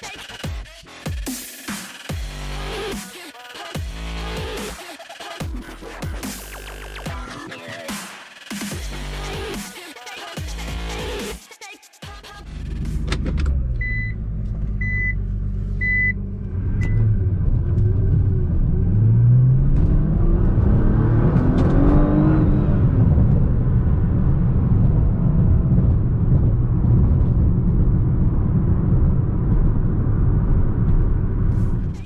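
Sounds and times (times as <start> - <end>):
road rumble: 12.2 - 32.0
car engine accelerating: 12.3 - 32.0
short electronic beeps: 13.8 - 14.2, 14.8 - 15.2, 15.8 - 16.2.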